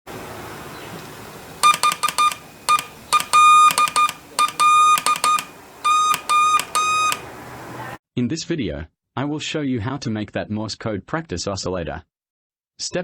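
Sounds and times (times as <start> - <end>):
morse code beeps: 1.6 - 7.3.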